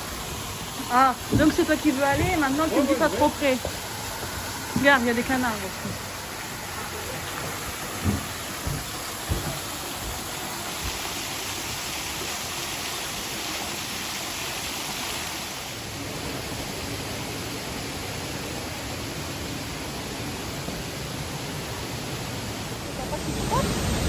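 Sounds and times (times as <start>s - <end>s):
water rushing: 0.0s - 24.0s
light knocks: 8.0s - 10.2s.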